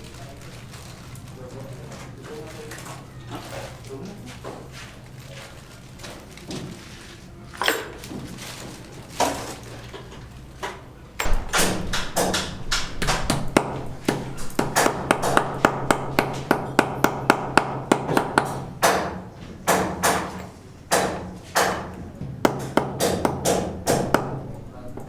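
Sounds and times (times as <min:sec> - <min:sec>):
hammer blows: 0:11.2 - 0:21.9.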